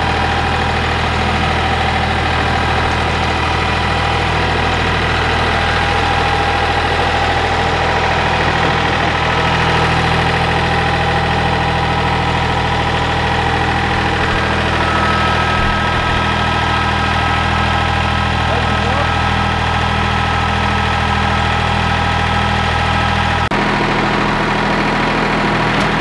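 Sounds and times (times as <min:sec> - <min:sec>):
tractor diesel engine idling: 0:00.0 - 0:26.0
faint high whine: 0:12.0 - 0:19.7.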